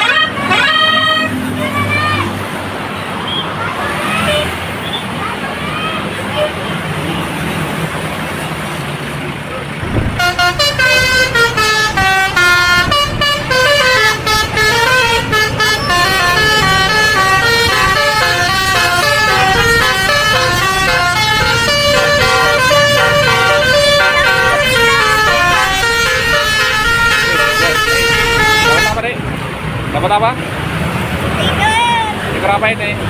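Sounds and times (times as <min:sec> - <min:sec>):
multi-tone bus horn melody: 0:00.0 - 0:02.2, 0:03.9 - 0:04.7, 0:06.2 - 0:06.8, 0:09.8 - 0:29.2.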